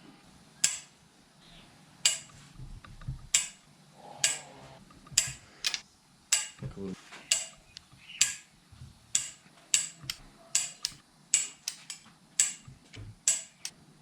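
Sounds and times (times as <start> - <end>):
hand tools clicking on metal: 0.6 - 0.9, 2.0 - 2.4, 3.3 - 3.6, 4.2 - 4.4, 5.2 - 6.6, 7.3 - 7.6, 8.2 - 8.4, 9.1 - 13.8.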